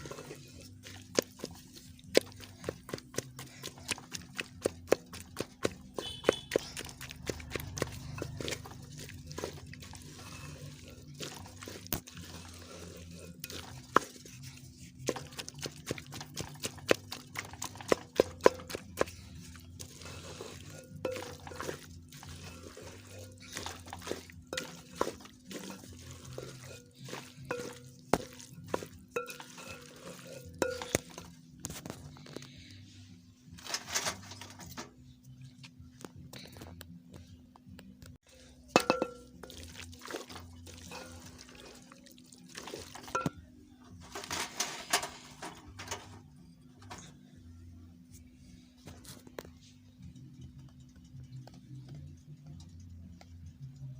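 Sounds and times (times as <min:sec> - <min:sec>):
soft background music: 0:00.0 - 0:53.9
water being poured: 0:19.7 - 0:31.2, 0:38.8 - 0:43.3
dishes and utensils clinking: 0:19.8 - 0:32.4, 0:33.6 - 0:35.0, 0:38.3 - 0:42.0, 0:42.6 - 0:47.2.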